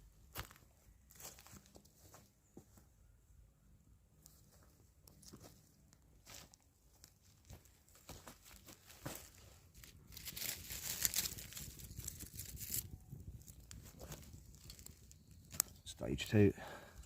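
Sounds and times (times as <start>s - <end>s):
fire crackling and popping: 10.1s - 17.0s.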